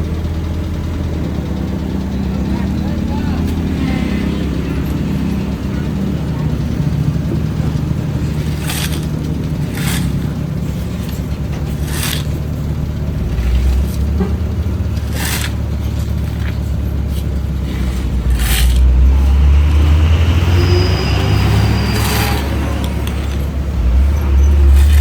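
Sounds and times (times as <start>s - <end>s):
heavy engine rumbling: 0.0s - 25.0s
hand tool scraping asphalt: 6.5s - 19.5s, 20.8s - 25.0s.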